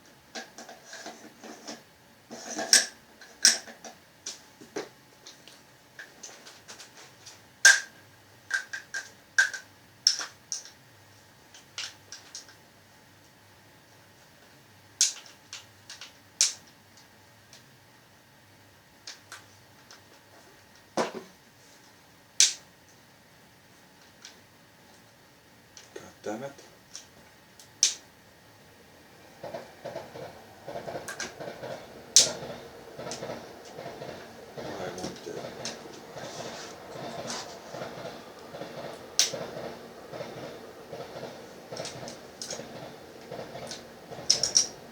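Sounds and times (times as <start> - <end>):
light clicks and rattles: 29.4 - 44.9
metal parts clicking and tapping: 41.8 - 44.8.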